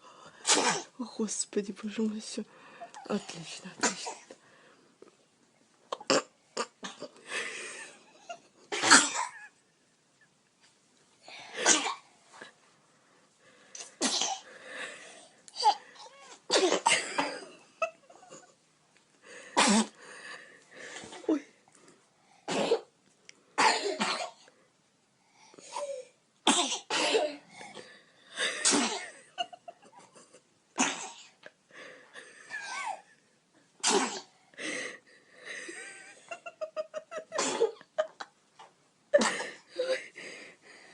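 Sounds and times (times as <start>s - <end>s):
child sneezing: 0.4s - 1.0s, 25.6s - 27.5s.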